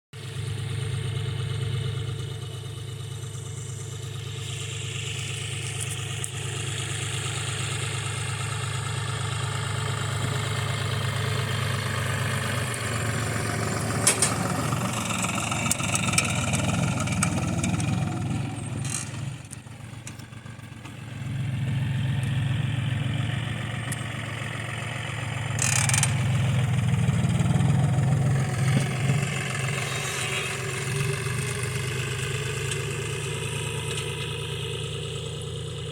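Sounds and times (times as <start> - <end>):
tractor engine running: 0.2 - 35.9.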